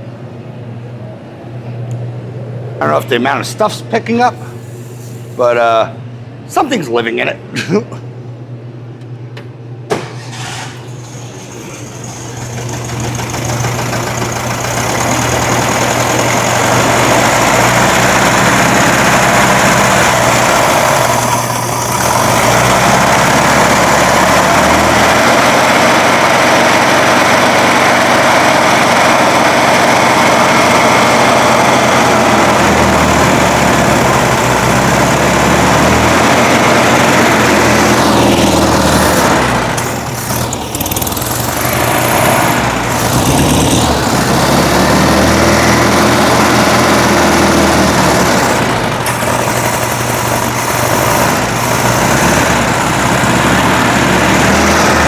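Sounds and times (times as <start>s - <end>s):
air-cooled engine running: 0.0s - 7.2s, 9.8s - 55.0s.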